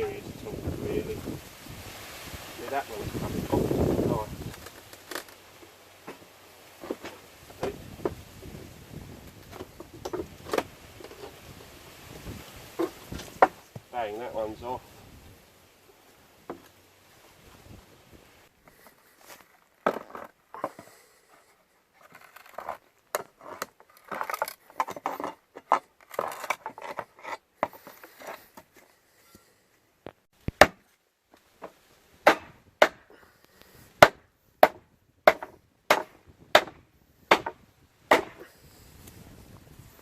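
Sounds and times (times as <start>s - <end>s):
pry bar scraping wood: 4.4s - 8.2s, 9.3s - 11.4s, 18.7s - 29.5s.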